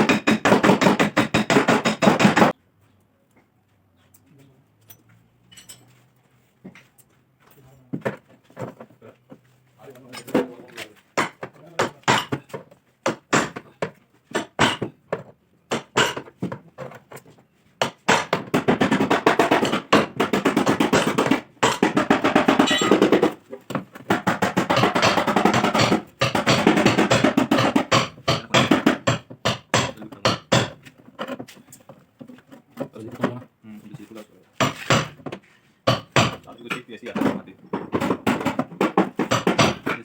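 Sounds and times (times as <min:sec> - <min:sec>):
hammer tapping on sheet metal: 0:00.0 - 0:02.6, 0:11.2 - 0:15.0, 0:15.7 - 0:16.4, 0:17.8 - 0:30.8, 0:34.6 - 0:36.5, 0:37.9 - 0:40.0.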